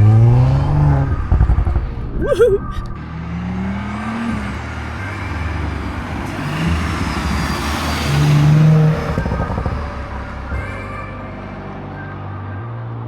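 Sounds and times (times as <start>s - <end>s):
short rising whine: 0.0s - 3.0s
car engine revving: 0.0s - 10.4s.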